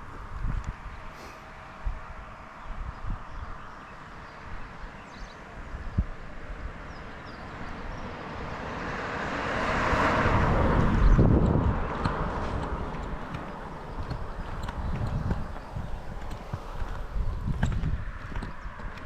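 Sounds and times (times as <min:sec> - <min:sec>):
vehicle passing by: 0:06.4 - 0:19.0.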